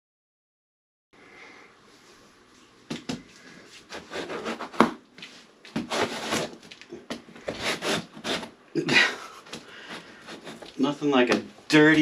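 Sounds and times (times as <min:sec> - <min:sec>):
cardboard box scraping and rustling: 0:05.8 - 0:06.6.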